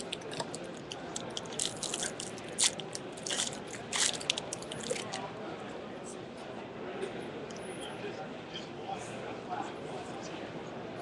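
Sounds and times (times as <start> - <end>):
card pack wrapping crinkling: 1.2 - 5.2.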